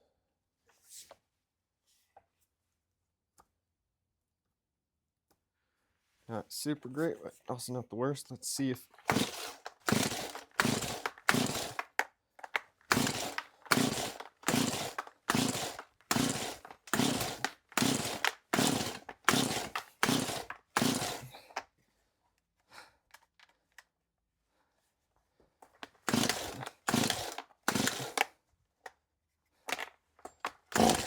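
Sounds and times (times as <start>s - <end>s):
recoil starter pulls: 9.0s - 21.3s, 25.8s - 28.3s, 29.7s - 31.0s.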